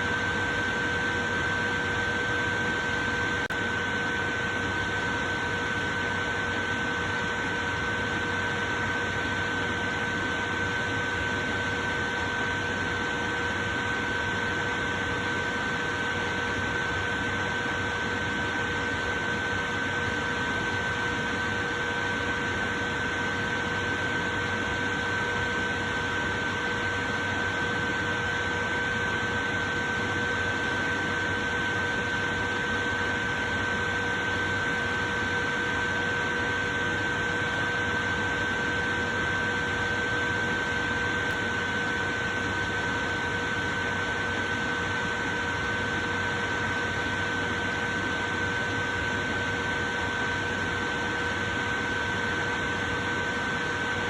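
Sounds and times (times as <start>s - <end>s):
electric fan running: 0.0s - 54.0s.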